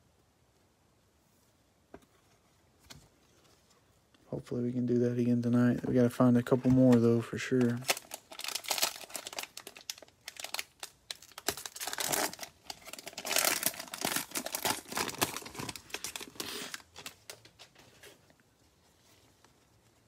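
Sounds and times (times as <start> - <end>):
cellophane crinkling and tearing: 6.3 - 18.2.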